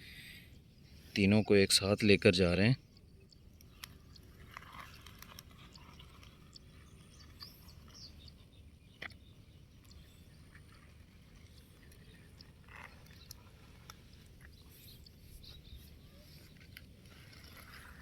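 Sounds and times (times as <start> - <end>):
toy wheels rolling over dirt: 3.6 - 18.0.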